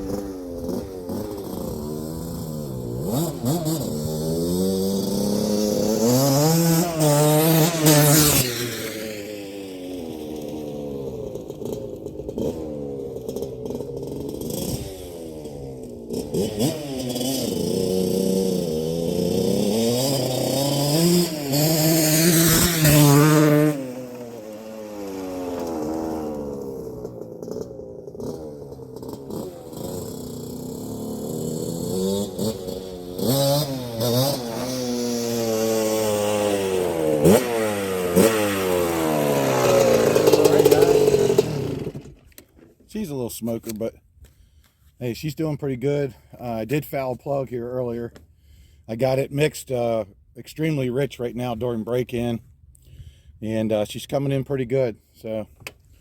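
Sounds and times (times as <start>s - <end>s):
motorcycle engine revving: 0.0s - 42.8s.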